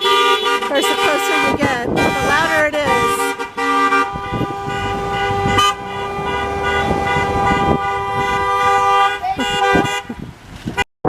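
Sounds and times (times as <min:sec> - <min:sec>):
car horns blasting: 0:00.0 - 0:10.3
vehicle rumbling past: 0:01.8 - 0:09.2.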